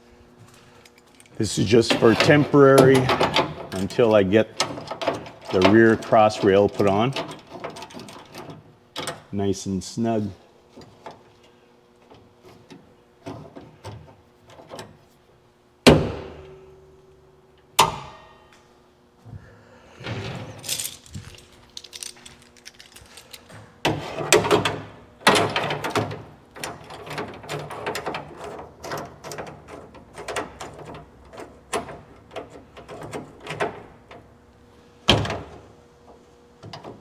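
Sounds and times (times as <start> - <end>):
metal jig pieces clinking and rattling: 20.6 - 23.5.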